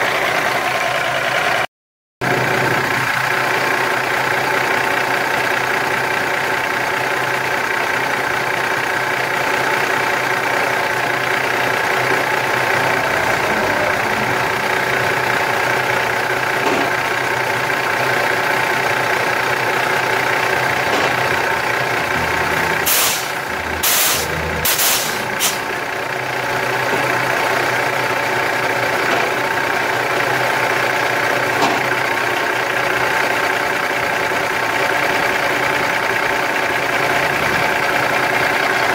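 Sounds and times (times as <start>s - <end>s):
diesel truck engine idling: 0.0s - 38.9s
air hissing: 22.8s - 25.7s.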